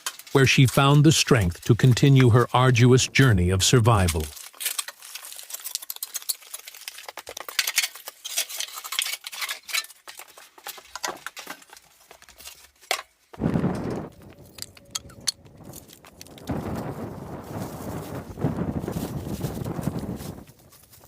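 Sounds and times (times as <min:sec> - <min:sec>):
small hard objects clicking: 0:03.9 - 0:13.1, 0:14.2 - 0:16.8.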